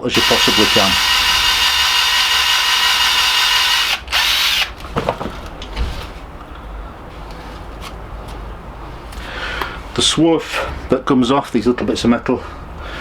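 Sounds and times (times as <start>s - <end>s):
electric drill running: 0.0s - 4.8s.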